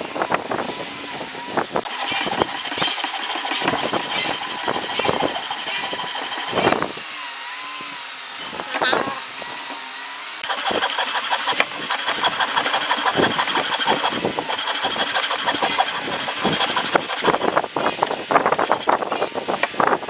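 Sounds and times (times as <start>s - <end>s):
engine running: 10.4s - 19.0s.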